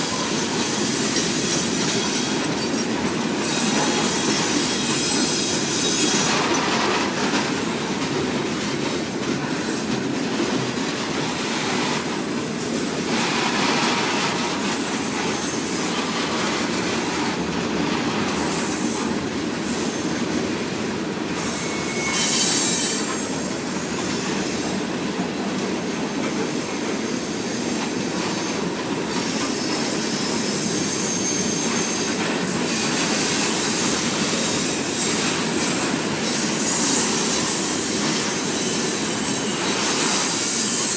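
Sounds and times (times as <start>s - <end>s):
wheels rumbling on rail: 0.0s - 40.9s
high-pitched flange squeal: 14.5s - 25.2s, 29.4s - 40.9s.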